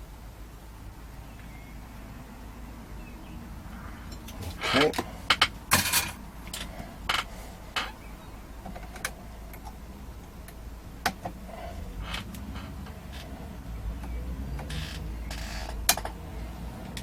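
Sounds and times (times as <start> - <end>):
tools clattering: 4.1 - 6.7
tools clicking and knocking: 15.6 - 16.2.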